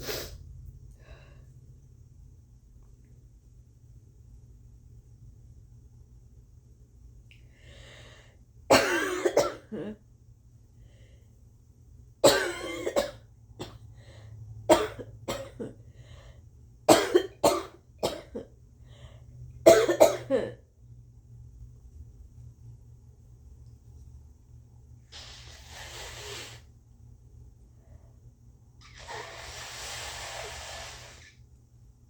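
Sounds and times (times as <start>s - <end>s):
woman coughing wet coughs: 8.7s - 10.0s, 12.2s - 13.8s, 14.7s - 15.8s, 16.9s - 18.5s, 19.7s - 20.6s.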